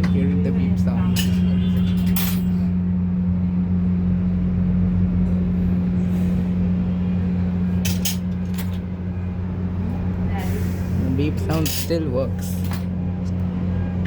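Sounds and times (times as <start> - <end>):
air conditioner humming: 0.0 - 14.0.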